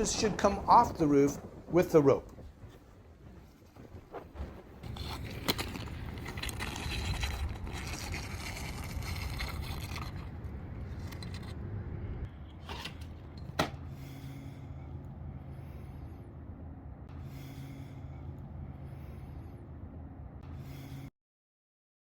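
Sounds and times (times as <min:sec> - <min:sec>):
rope scraping over roof: 0:03.2 - 0:11.5.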